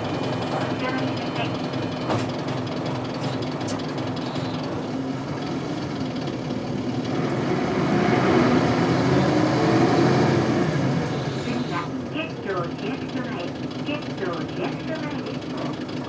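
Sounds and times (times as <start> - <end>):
bus diesel engine running: 0.0 - 16.0.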